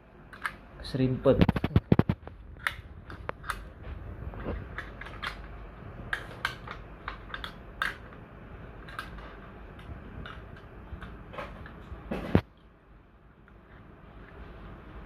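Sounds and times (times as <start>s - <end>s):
low steady hum: 0.0s - 15.0s
small parts clicking and tapping: 0.3s - 0.6s, 1.4s - 12.7s.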